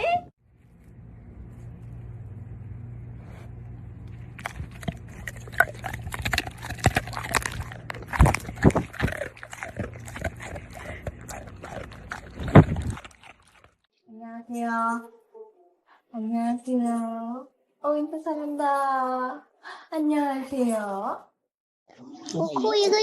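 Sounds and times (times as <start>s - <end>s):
steady low hum: 0.4s - 13.6s.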